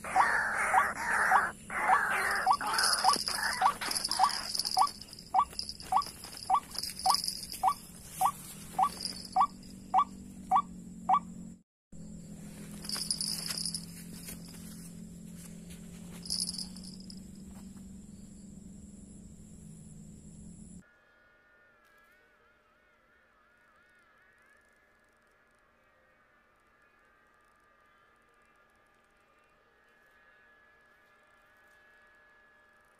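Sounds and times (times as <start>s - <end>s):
bird calls with rising notes: 0.0s - 11.4s
high-pitched insect buzzing: 0.0s - 11.4s, 12.5s - 14.8s, 16.2s - 17.2s
steady low hum: 0.0s - 20.8s.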